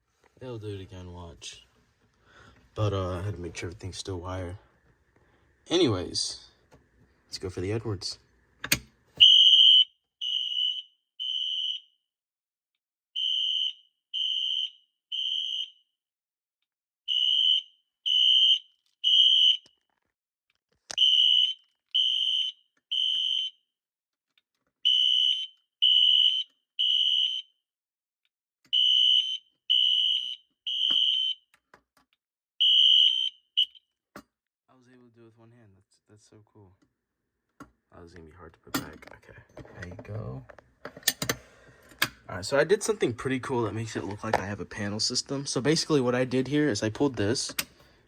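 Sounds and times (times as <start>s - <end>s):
fire alarm horn blasts: 9.2s - 11.9s, 13.2s - 15.8s, 17.1s - 19.7s, 21.0s - 23.6s, 24.9s - 27.5s, 28.7s - 31.4s, 32.6s - 33.8s.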